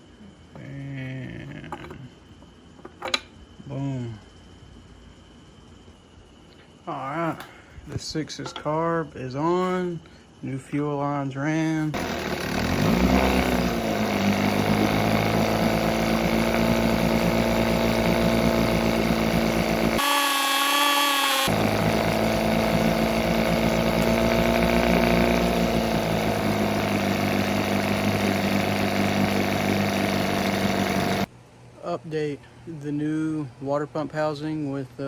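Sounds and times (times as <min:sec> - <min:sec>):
outboard motor running: 0:12.0 - 0:31.3.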